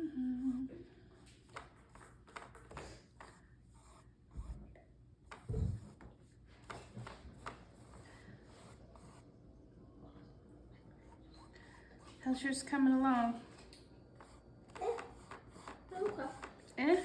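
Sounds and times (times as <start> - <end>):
paintbrush scratching on canvas: 3.1 - 4.7, 5.3 - 9.3, 11.0 - 13.1, 14.1 - 17.0.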